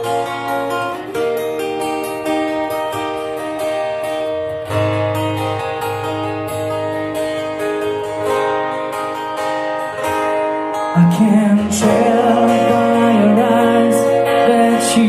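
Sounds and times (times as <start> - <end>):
acoustic guitar picking and strumming: 0.0 - 15.0
person singing: 11.0 - 15.0.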